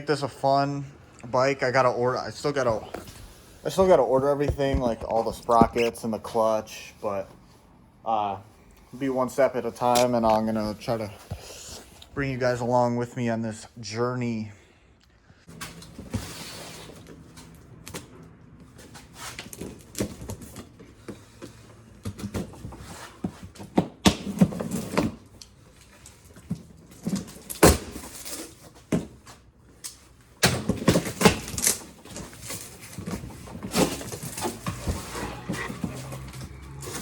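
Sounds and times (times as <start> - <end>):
cardboard flaps rustling: 30.6 - 37.0.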